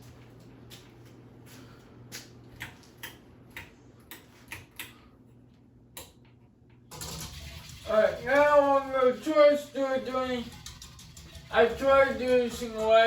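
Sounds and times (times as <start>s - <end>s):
ceiling fan humming: 0.0s - 13.0s.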